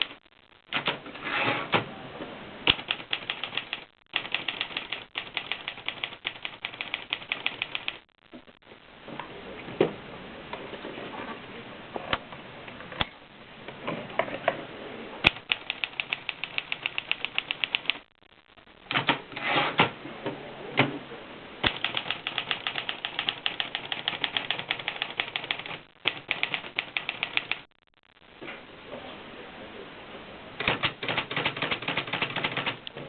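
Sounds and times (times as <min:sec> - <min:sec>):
manual typewriter typing: 0:02.7 - 0:08.0, 0:15.3 - 0:18.1, 0:21.6 - 0:27.7, 0:30.6 - 0:32.8.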